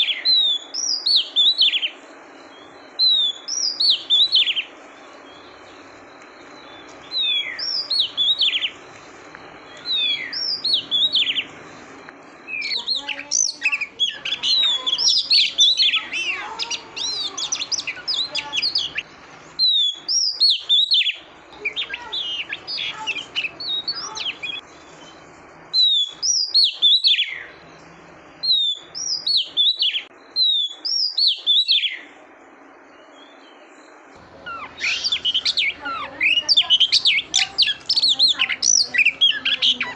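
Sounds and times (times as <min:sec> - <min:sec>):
bird whistled calls: 0:00.0 - 0:04.7, 0:05.3 - 0:08.9, 0:09.6 - 0:11.6, 0:12.5 - 0:27.6, 0:28.4 - 0:32.2, 0:34.3 - 0:39.9
bird chattering: 0:06.8 - 0:08.8, 0:09.7 - 0:11.6, 0:12.5 - 0:24.6, 0:34.2 - 0:39.9.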